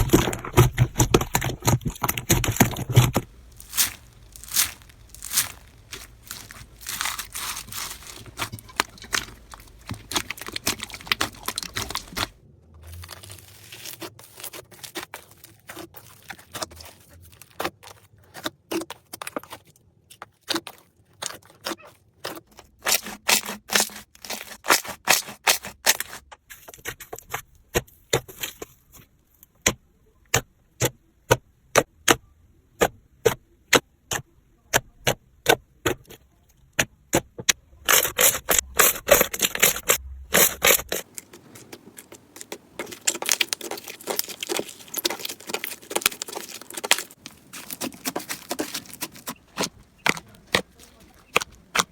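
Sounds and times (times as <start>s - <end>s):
slime squishing and popping: 0.0s - 12.3s, 37.9s - 51.9s.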